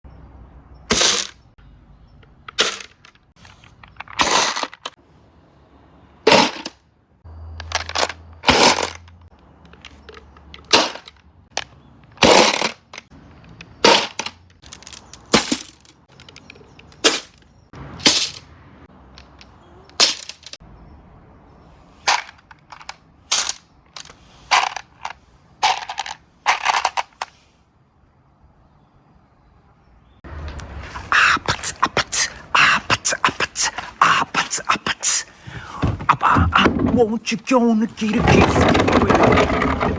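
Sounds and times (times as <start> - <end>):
marbles clacking on track: 7.6 - 17.3.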